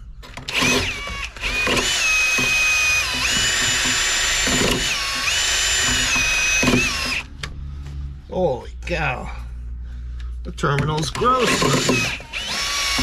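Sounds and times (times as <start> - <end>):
electric drill whining with wire brush: 0.5 - 7.3, 11.2 - 13.0.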